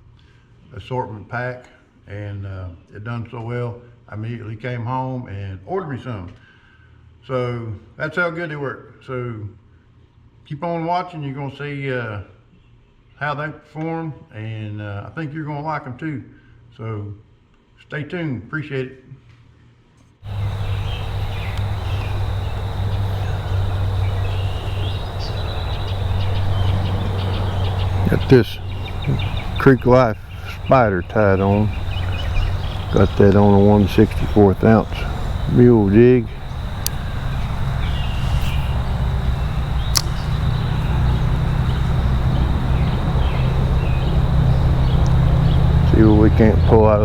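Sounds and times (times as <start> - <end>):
low hum: 20.2 - 47.0
rushing creek water: 20.3 - 46.8
bird chirps: 20.3 - 47.0
steady low rumble: 20.3 - 47.0
sharp click: 39.9 - 40.3.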